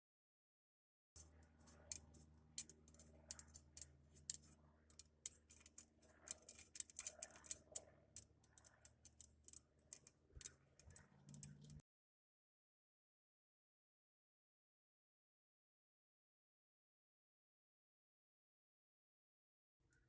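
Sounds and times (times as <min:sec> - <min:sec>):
faint metallic clicks of spoke nipples: 0:01.2 - 0:11.8
metal spokes tapping together: 0:01.2 - 0:11.8.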